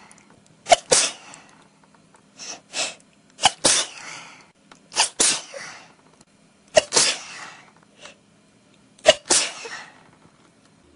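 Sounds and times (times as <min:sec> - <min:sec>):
person sneezing: 0:00.7 - 0:01.4, 0:02.4 - 0:04.1, 0:04.9 - 0:05.9, 0:06.7 - 0:08.2, 0:09.0 - 0:10.0.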